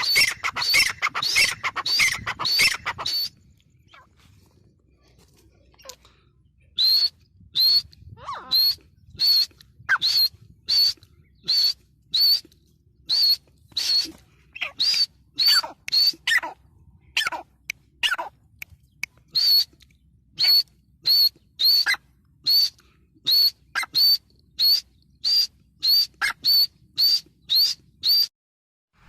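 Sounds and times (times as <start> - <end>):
francolin shrill whistled calls: 0.0 - 3.4, 6.8 - 12.4, 13.1 - 16.5, 19.3 - 19.7, 20.4 - 28.3.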